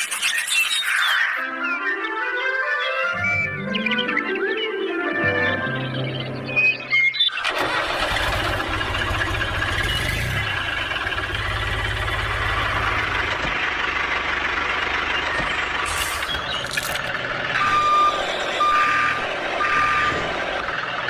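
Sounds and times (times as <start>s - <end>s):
engine starting and running: 6.2s - 21.0s.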